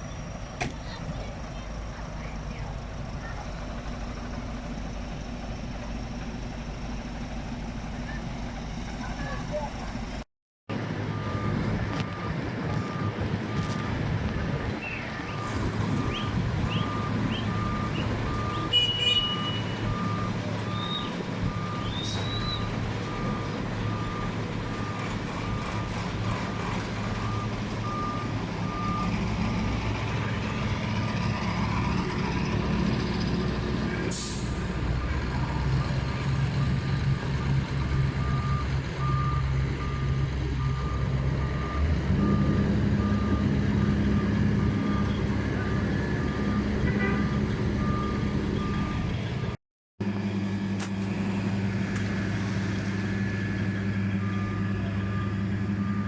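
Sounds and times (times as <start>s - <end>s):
diesel engine running: 0.0s - 56.0s
truck reversing alarm beeping: 11.1s - 14.0s, 14.9s - 31.6s, 34.2s - 49.5s, 54.0s - 56.0s.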